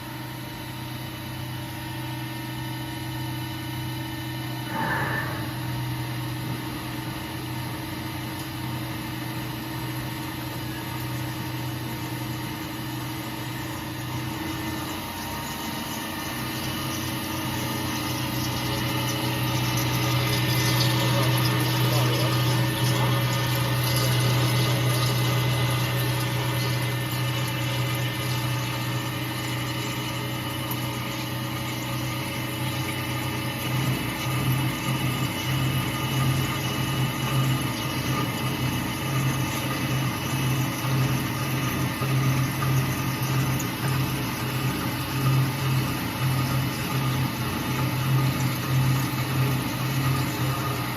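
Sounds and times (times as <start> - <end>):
drilling machine motor hum: 8.6 - 50.9.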